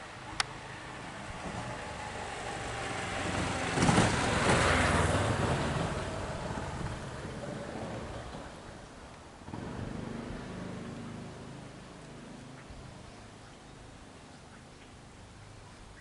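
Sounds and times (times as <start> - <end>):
road vehicle passing by: 0.0 - 16.0.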